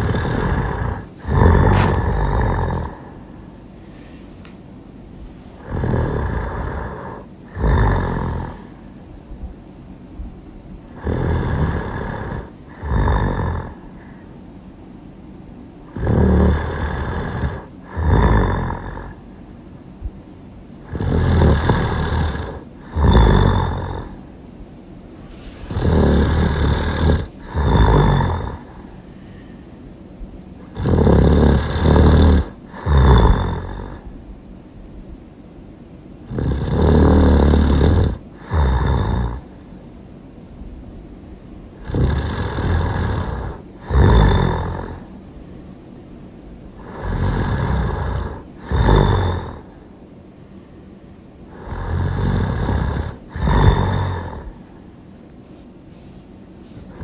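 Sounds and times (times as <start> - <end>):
loud human snoring: 0.0 - 3.3, 5.6 - 8.8, 10.9 - 13.9, 15.8 - 19.2, 20.8 - 24.2, 25.3 - 29.0, 30.6 - 34.1, 36.2 - 39.6, 41.8 - 45.1, 46.8 - 49.8, 51.5 - 54.7.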